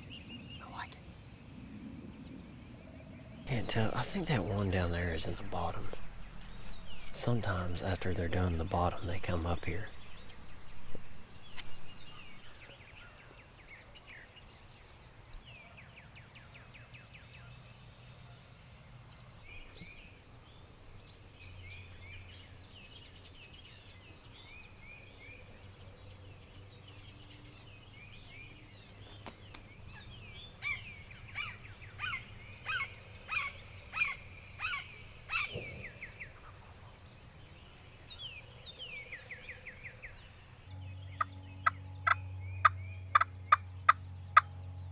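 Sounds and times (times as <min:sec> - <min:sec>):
songbirds singing and calling: 0:00.0 - 0:44.9
faint low background rumble: 0:03.4 - 0:12.6.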